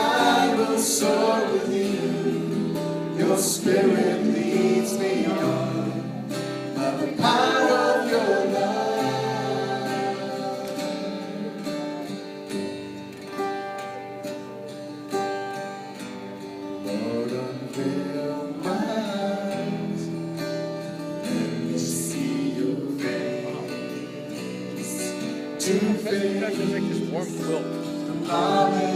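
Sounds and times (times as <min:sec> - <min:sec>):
voices singing worship song: 0:00.0 - 0:12.1, 0:17.0 - 0:20.3, 0:21.2 - 0:28.9
plucked acoustic guitar: 0:00.0 - 0:28.9.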